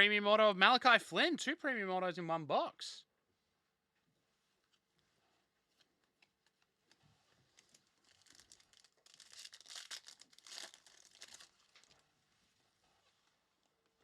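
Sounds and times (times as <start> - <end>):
wrapper tearing and crinkling: 7.6 - 12.0.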